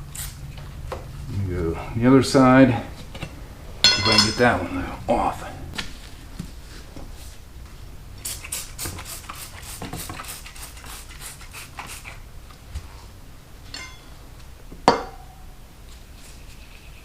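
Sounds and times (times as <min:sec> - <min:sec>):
tire irons clinking on wheel rim: 0:03.0 - 0:05.0, 0:13.6 - 0:14.2
sharp metal clank with ring: 0:03.8 - 0:04.7, 0:13.7 - 0:14.2.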